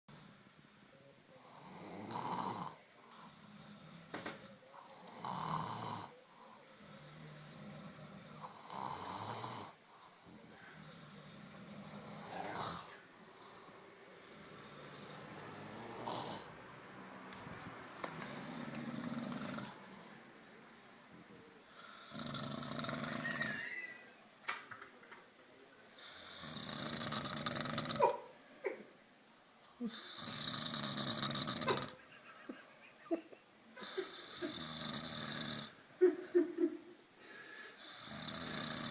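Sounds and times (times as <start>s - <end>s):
quiet breathing: 0.1s - 27.3s, 33.8s - 38.9s
person snoring: 1.4s - 9.8s, 10.5s - 16.6s, 18.2s - 20.0s, 21.6s - 24.2s, 26.0s - 28.1s, 29.8s - 32.0s, 33.8s - 35.8s, 37.2s - 38.9s.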